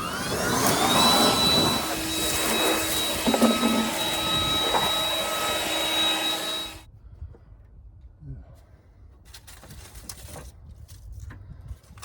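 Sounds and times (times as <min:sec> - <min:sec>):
vacuum cleaner whining: 0:00.0 - 0:06.9.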